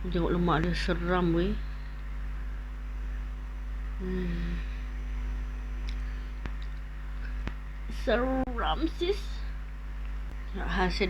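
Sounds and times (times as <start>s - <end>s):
low electrical hum: 0.0s - 11.0s
woman humming mmm: 4.0s - 4.8s
faint clicks: 5.8s - 7.6s.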